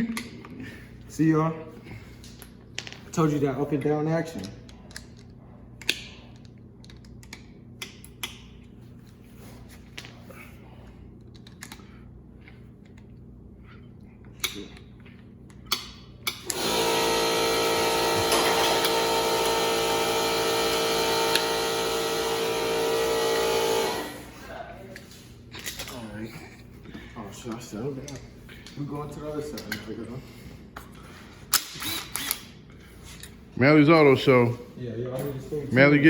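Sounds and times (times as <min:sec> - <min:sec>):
loud machine hum: 0:16.4 - 0:24.6.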